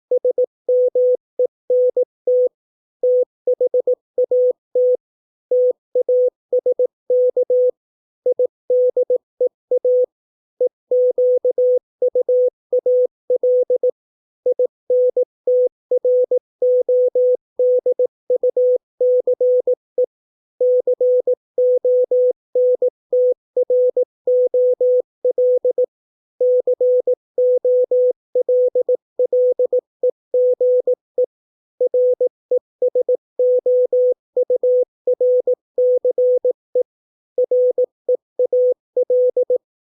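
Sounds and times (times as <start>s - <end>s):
morse code beeps: 31.8s - 39.6s.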